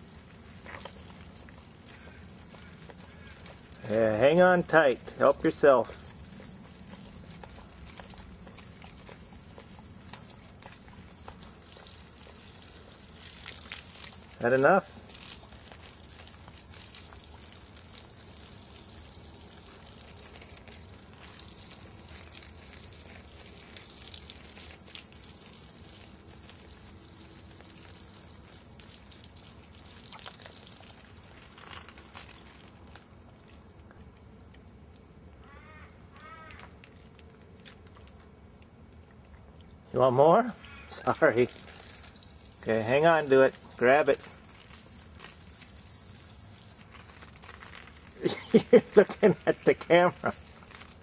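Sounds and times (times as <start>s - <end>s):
water trickling and dripping: 0.0s - 35.2s, 38.9s - 51.0s.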